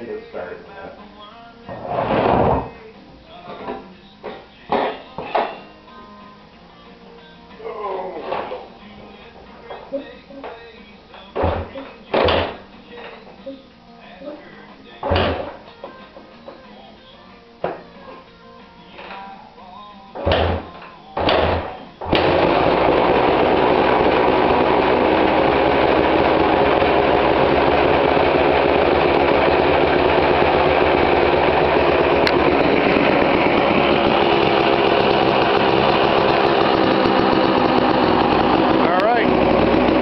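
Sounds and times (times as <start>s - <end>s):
dirt bike engine starting: 21.2s - 40.0s.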